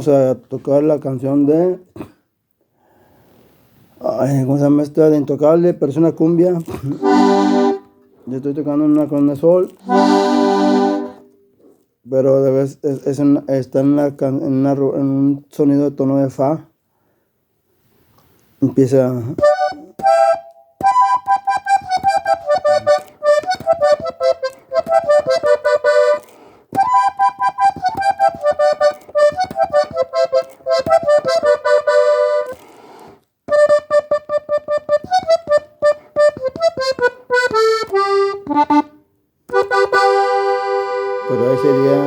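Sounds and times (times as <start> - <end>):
button accordion melody: 6.9 - 8.0, 9.8 - 11.5, 19.4 - 42.0.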